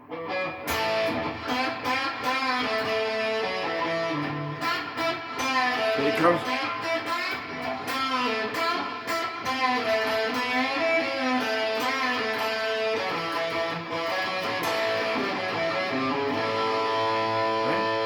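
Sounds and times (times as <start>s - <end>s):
electric guitar blues solo: 0.0s - 18.0s.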